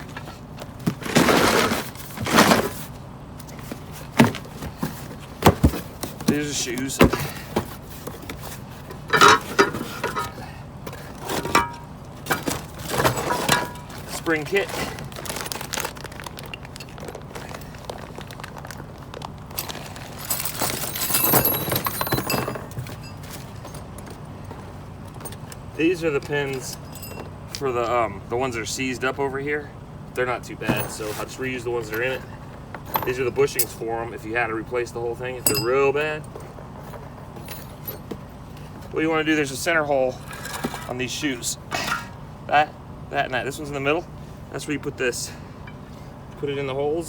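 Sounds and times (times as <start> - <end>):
rustling scrapes: 1.0 - 6.2, 12.4 - 23.7
small metal parts clinking: 15.2 - 24.2, 25.1 - 25.6, 26.4 - 27.6, 30.6 - 33.8, 35.4 - 38.2.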